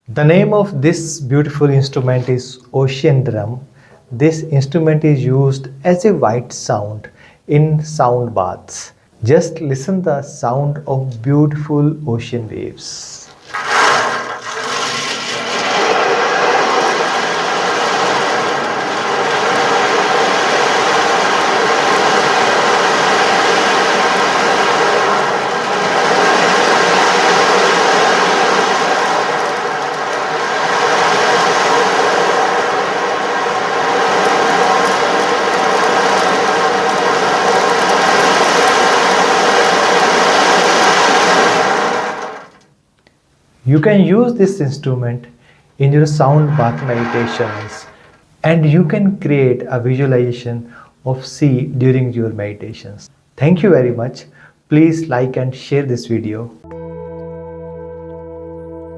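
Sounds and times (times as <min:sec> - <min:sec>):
ocean drum beads hissing: 0:13.3 - 0:42.6, 0:45.4 - 0:48.4.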